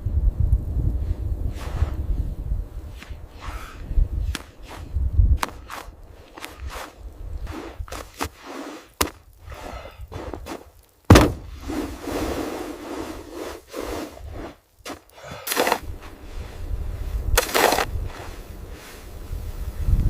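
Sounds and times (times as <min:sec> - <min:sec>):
rustling: 0:01.1 - 0:20.0
knocks and scrapes: 0:02.9 - 0:16.2
loud thump: 0:11.1 - 0:11.6.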